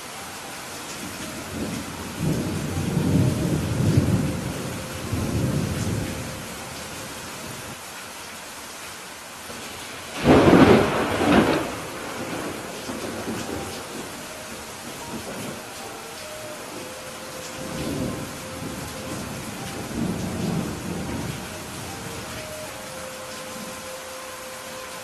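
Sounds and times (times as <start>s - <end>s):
steady rain: 0.0s - 25.0s
thunder rumbling: 1.0s - 7.8s, 9.6s - 23.9s
thunder crack: 10.2s - 14.2s.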